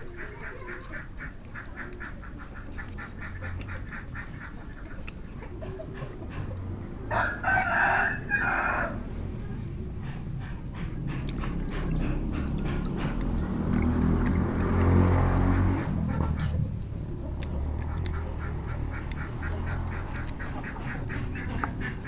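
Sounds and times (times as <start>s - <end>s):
rooster crowing: 7.1s - 9.1s
rapid short ticks: 10.4s - 22.0s.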